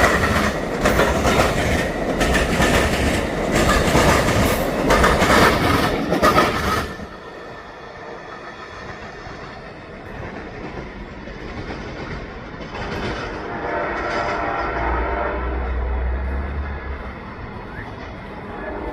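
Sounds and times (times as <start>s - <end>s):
wheels clattering over rail joints: 0.0s - 7.3s, 8.6s - 14.8s
passenger train passing: 0.0s - 18.9s.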